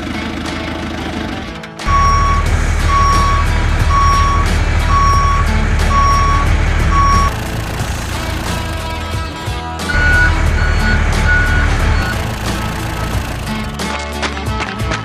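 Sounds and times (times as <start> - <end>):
low engine rumble: 0.0 - 13.9
truck reversing alarm beeping: 1.9 - 9.0, 9.9 - 13.8.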